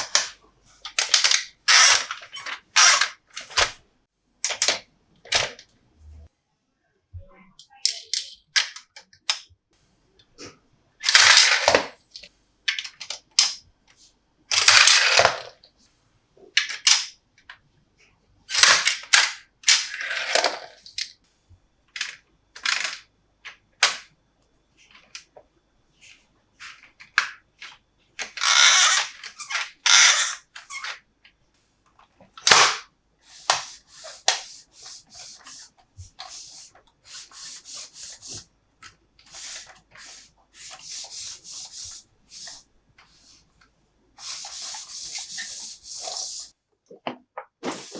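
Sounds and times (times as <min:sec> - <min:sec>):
plastic pieces clicking: 0:00.0 - 0:03.7.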